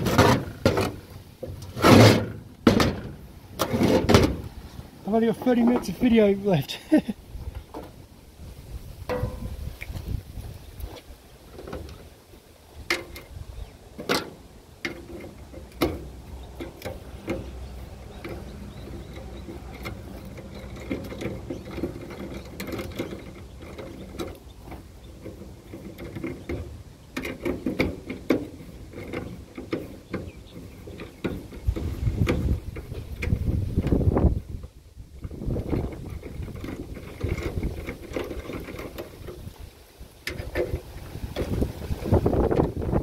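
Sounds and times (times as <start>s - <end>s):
metal clanks and knocks: 0.0s - 4.5s, 9.0s - 9.6s, 14.0s - 34.2s, 35.2s - 39.6s.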